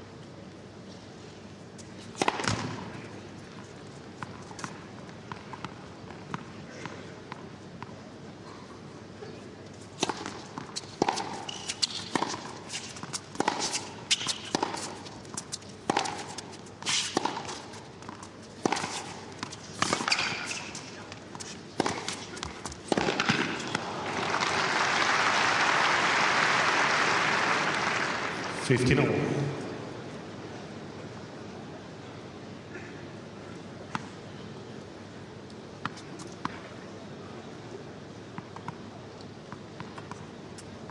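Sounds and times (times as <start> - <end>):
tennis ball bouncing on court: 2.2 - 2.8, 10.0 - 16.5, 17.1 - 24.6
rackets hitting tennis ball: 10.0 - 24.6
crowd applauding: 23.8 - 28.7.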